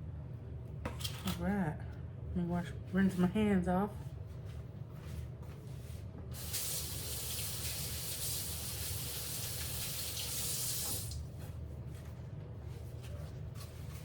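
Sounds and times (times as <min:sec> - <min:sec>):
faucet water running: 0:06.3 - 0:11.2.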